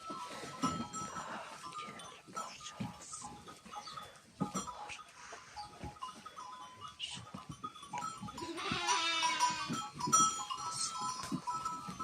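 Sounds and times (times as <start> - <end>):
sheep bleating: 8.4 - 9.8.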